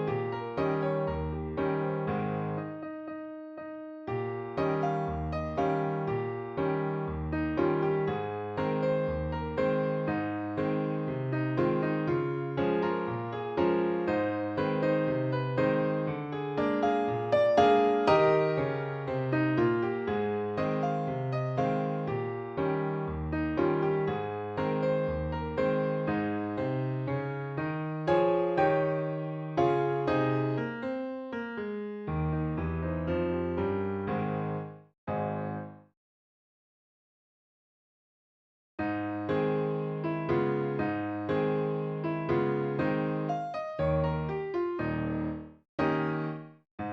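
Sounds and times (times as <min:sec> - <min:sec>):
electric piano chords: 0:00.0 - 0:35.8, 0:38.8 - 0:46.9.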